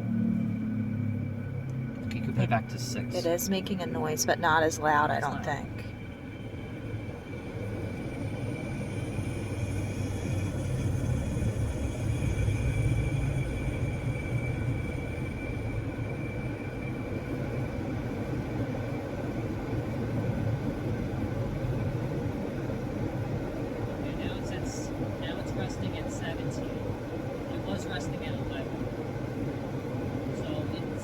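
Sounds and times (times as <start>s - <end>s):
car engine rumbling: 0.0s - 31.0s.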